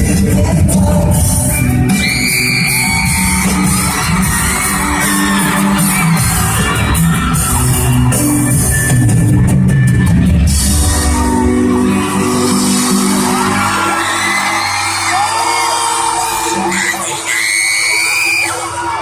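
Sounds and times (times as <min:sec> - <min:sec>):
person singing: 0:00.0 - 0:02.0
crowd screaming and cheering: 0:00.0 - 0:19.0
drums: 0:00.0 - 0:19.0
live pop-rock band: 0:00.0 - 0:19.0.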